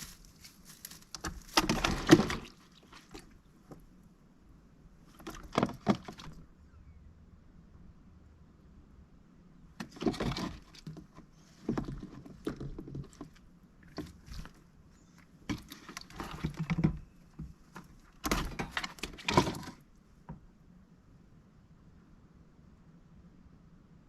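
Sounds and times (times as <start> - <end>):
duck splashing in water bowl: 1.2 - 3.3.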